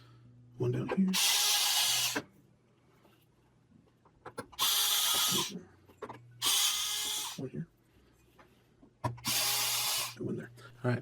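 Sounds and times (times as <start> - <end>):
electric screwdriver running: 1.2 - 2.2, 4.6 - 5.5, 6.4 - 7.4, 9.2 - 10.2.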